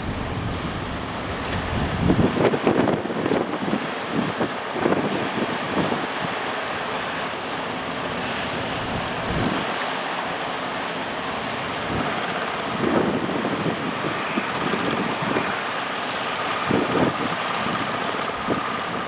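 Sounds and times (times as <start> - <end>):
surf breaking: 0.0 - 2.5
wind buffeting microphone: 0.0 - 7.2, 8.0 - 9.8, 11.2 - 19.0.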